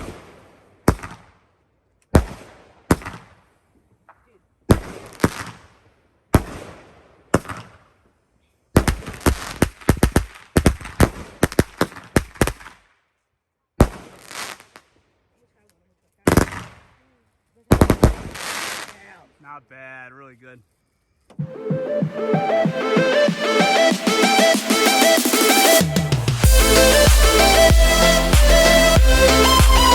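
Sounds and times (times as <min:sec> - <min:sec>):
firework bangs: 0:17.7 - 0:19.1.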